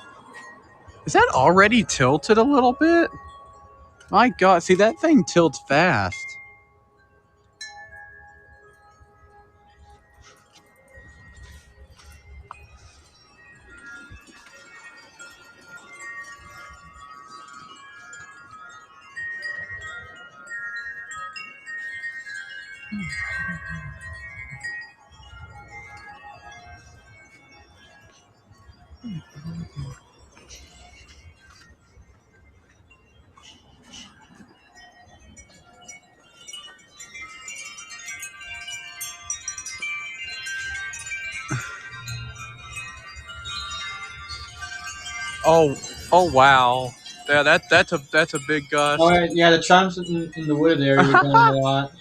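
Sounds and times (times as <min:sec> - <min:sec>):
wind chimes ringing: 0:00.0 - 0:52.0
low wind rumble: 0:38.0 - 0:50.5.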